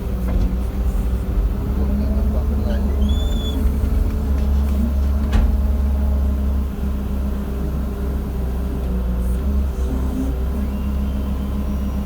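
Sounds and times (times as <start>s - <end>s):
excavator diesel engine droning: 0.0s - 12.0s.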